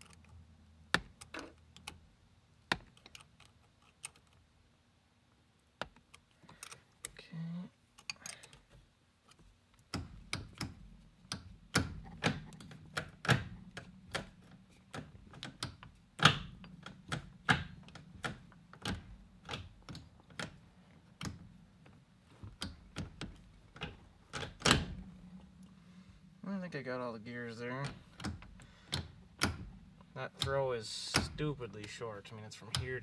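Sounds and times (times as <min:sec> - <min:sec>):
metallic clicks of gear shifter: 0:08.0 - 0:25.8, 0:27.3 - 0:33.0.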